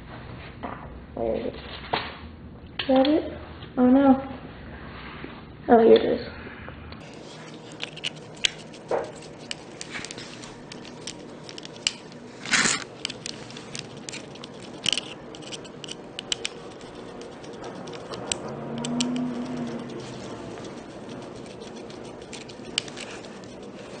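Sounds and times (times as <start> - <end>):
small parts clicking and scraping: 7.0 - 24.0.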